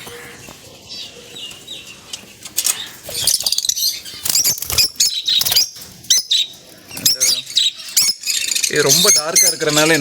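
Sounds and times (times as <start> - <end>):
birds chirping and squawking: 0.0 - 10.0
wings fluttering: 1.5 - 7.2.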